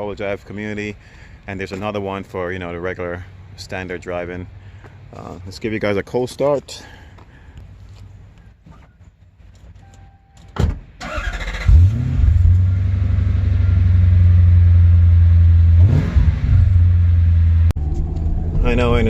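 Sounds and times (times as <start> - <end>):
engine revving: 11.1 - 19.0.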